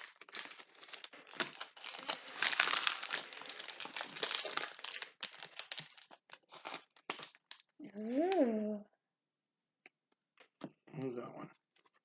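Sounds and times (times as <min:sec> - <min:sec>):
wrapper tearing and crinkling: 0:00.0 - 0:07.7.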